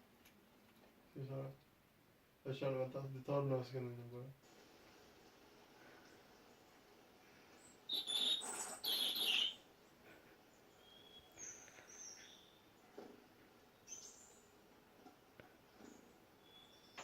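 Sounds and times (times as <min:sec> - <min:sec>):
birds chirping: 0:07.4 - 0:17.0.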